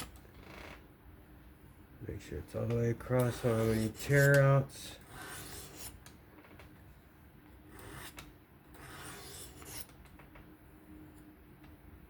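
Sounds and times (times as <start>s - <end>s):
sharpening stone scraping knife edge: 5.1s - 6.0s, 8.8s - 9.9s.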